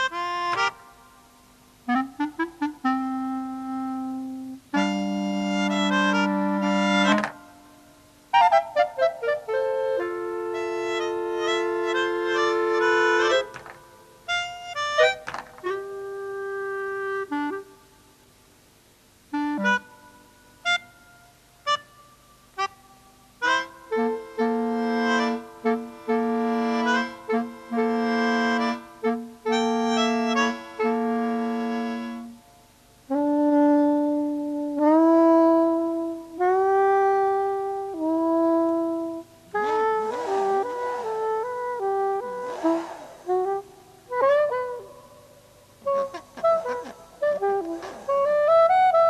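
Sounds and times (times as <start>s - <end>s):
woodwind incidental music: 0.0s - 18.2s, 19.2s - 49.0s
short noisy swish: 39.6s - 43.7s.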